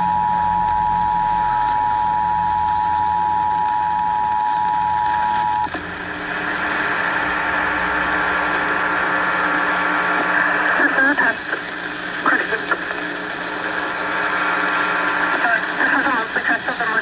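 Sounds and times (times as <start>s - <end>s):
faint low hum: 0.0s - 11.3s
radio hiss: 0.0s - 17.0s.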